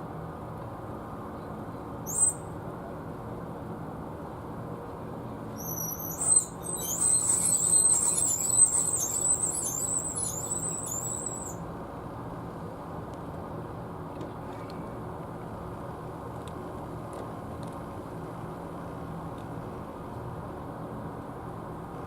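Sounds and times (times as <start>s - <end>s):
small bird chirping and twittering: 2.1s - 2.5s, 5.6s - 11.6s.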